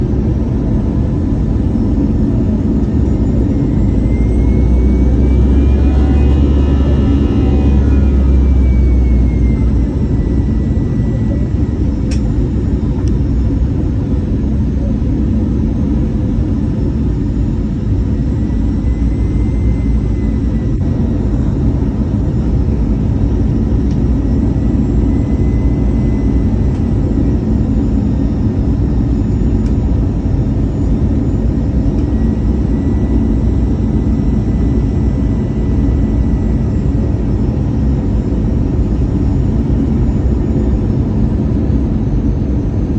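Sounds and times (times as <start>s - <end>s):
jet engine roar in cabin: 0.0s - 42.9s
thin high whine: 2.1s - 12.6s.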